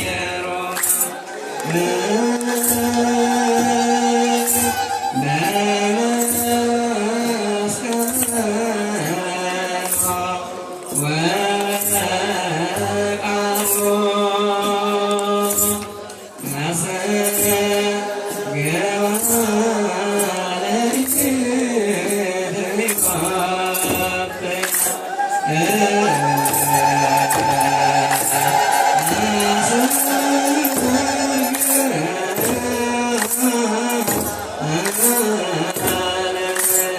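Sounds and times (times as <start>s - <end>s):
group of voices chanting: 0.0s - 5.6s, 23.8s - 36.9s
high rattling: 23.1s - 35.2s
low drum beats: 25.4s - 34.8s.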